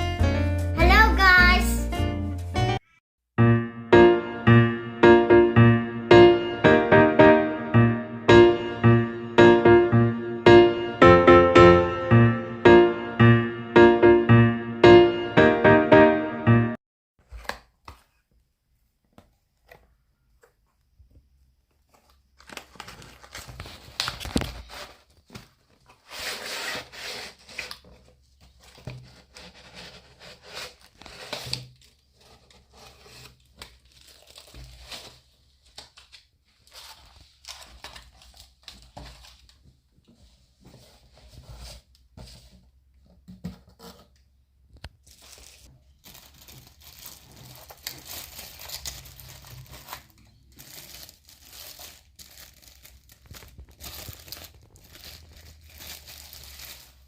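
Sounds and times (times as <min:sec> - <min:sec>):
packaging tearing and rustling: 0:21.9 - 0:39.6, 0:45.0 - 0:57.0.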